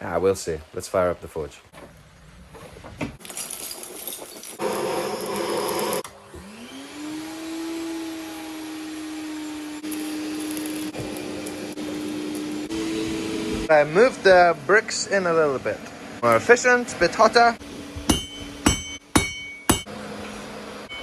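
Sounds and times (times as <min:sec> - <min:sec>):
vacuum motor whine and hum: 0:04.7 - 0:13.7.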